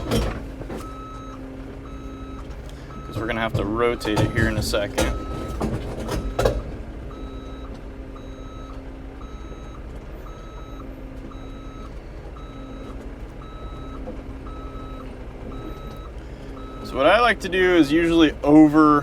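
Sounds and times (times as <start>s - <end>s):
diesel engine running: 0.0s - 19.0s
excavator warning alarm beeping: 0.0s - 19.0s.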